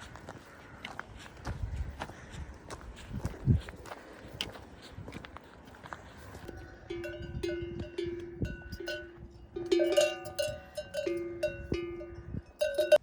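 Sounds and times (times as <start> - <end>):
metal bells clanking: 6.5 - 13.0.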